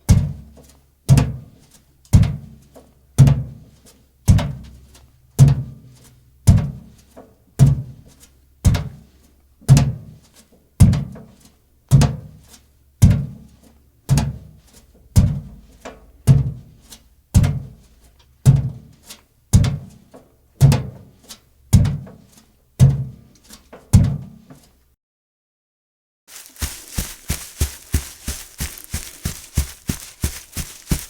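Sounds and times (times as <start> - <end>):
bare footsteps thudding: 26.3 - 31.0.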